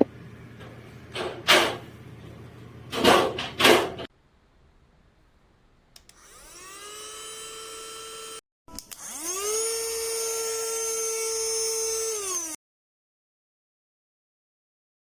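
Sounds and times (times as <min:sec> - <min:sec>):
handheld vacuum motor whining: 0:06.1 - 0:12.6.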